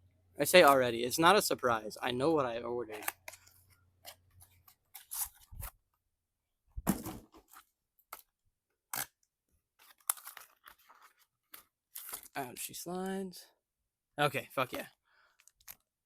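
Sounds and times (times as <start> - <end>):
toy packaging rustling and clicking: 14.7 - 16.0.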